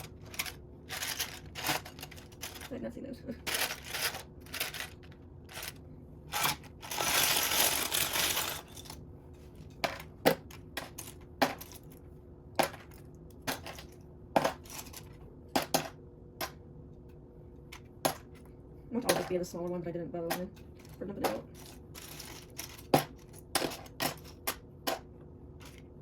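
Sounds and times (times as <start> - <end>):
rattling clatter of plastic pieces: 0.0 - 2.8, 3.4 - 9.0, 9.7 - 12.0, 12.6 - 15.9, 20.8 - 25.0, 25.6 - 25.9
plastic pieces clicking: 3.5 - 9.0.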